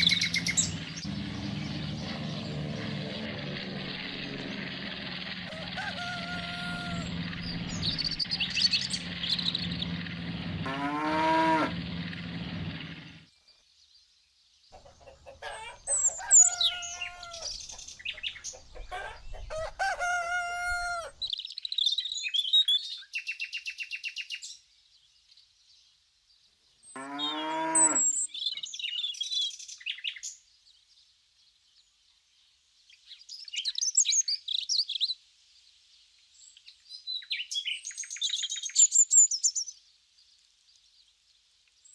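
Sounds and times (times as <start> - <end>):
motor hum: 0.0 - 13.3
birds chirping: 0.0 - 31.1
hens clucking: 5.2 - 8.7, 14.7 - 21.2
cow mooing: 10.6 - 12.0, 27.0 - 28.2.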